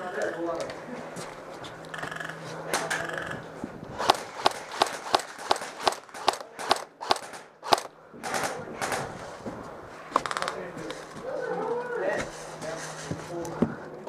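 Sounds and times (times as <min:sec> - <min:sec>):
airsoft gun firing: 0:04.0 - 0:09.0.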